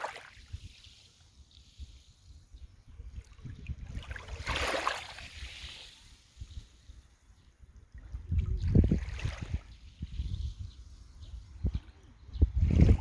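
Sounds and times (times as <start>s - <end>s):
waves lapping at shore: 0.0s - 2.4s, 3.3s - 7.1s.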